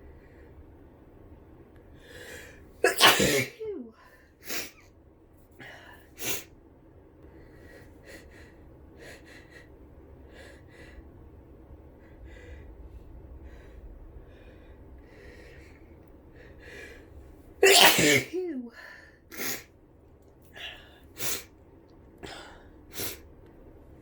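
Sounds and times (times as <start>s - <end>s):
loud sneeze: 2.8s - 4.8s, 17.6s - 18.7s, 19.3s - 19.7s.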